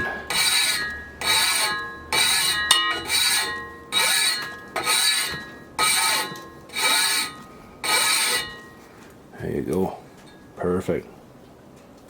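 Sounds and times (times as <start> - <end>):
file rasping on saw teeth: 0.0 - 8.6
saw blade ringing: 0.0 - 8.8.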